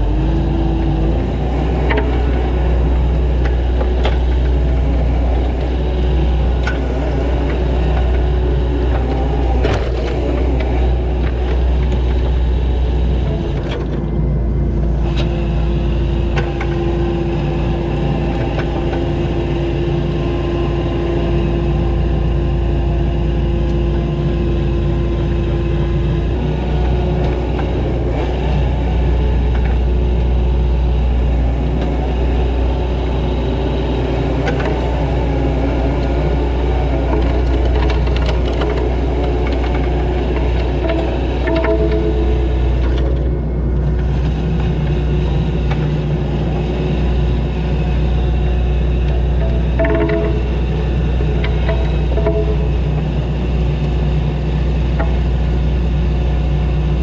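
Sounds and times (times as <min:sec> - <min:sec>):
diesel engine droning: 0:00.0 - 0:57.0
steady machine whine: 0:00.0 - 0:57.0.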